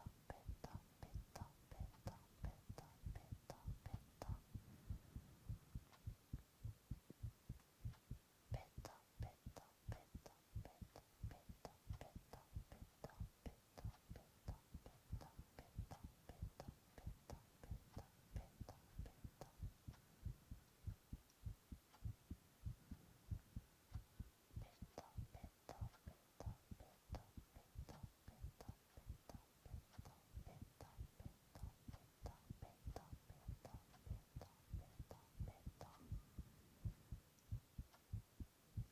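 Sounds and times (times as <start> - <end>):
heartbeat thumps: 0.0 - 38.9.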